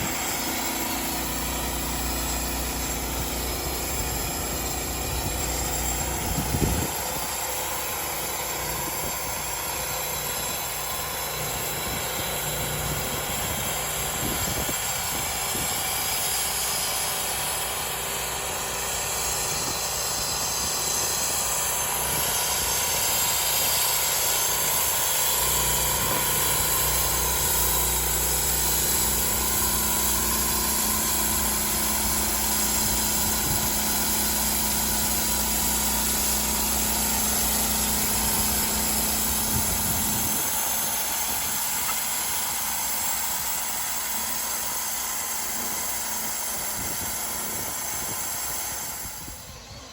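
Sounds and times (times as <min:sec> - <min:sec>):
sawmill engine running: 0:00.0 - 0:49.9.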